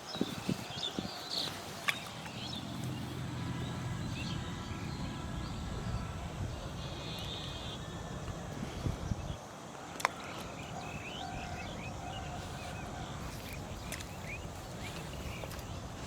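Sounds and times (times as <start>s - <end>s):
birds chirping: 0.0s - 16.0s
outdoor background noise: 0.0s - 16.0s.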